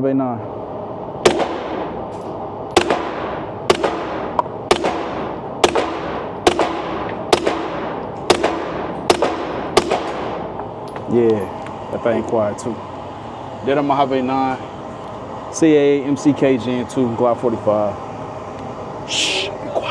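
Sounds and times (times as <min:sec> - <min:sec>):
suppressed pistol shots: 0:01.2 - 0:10.5.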